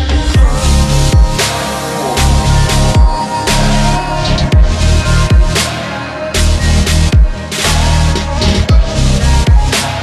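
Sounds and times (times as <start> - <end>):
dubstep music with heavy bass: 0.0 - 10.0.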